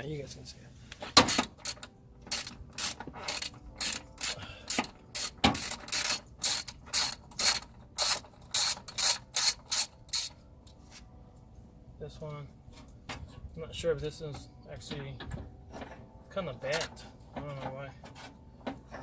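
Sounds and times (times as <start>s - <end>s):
ratchet wrench clicking: 1.2s - 10.4s.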